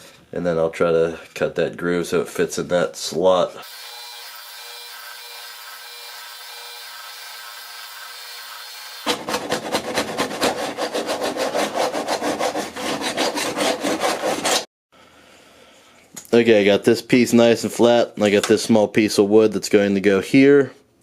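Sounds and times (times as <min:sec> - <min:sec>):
wood rasping by hand: 0:06.6 - 0:14.7.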